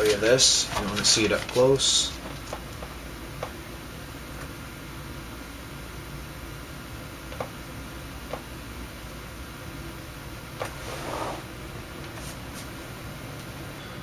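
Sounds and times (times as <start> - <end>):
scraping rustle: 0.0 - 2.5
steady low hum: 0.0 - 14.0.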